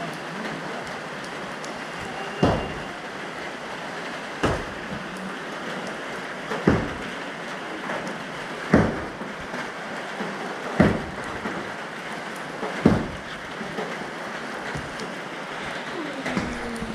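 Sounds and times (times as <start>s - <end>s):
rain falling: 0.0s - 16.9s
heavy thumps: 6.7s - 7.1s, 8.7s - 9.2s, 12.8s - 13.3s.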